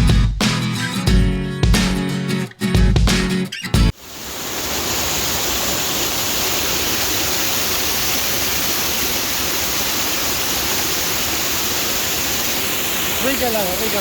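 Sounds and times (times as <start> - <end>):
river water rushing: 3.9 - 14.0.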